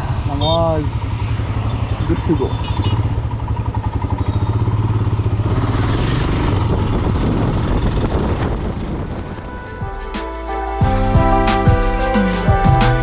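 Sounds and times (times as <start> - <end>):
motorcycle engine running: 0.0 - 9.8.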